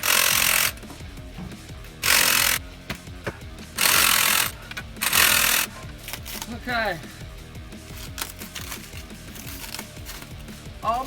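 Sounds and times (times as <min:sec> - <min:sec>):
power wrench driving bolts: 0:00.0 - 0:01.0, 0:01.9 - 0:02.6, 0:03.7 - 0:06.5.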